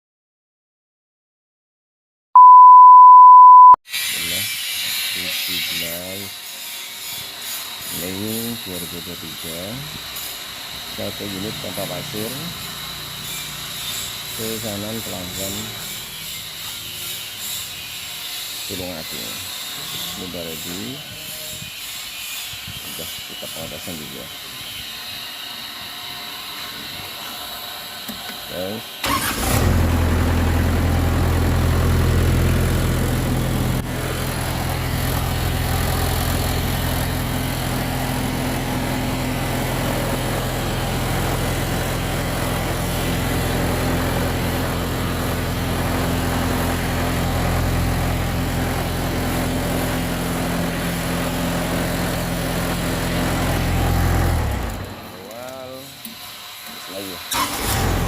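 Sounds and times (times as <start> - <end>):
diesel engine running: 29.0 - 55.8, 57.0 - 58.0.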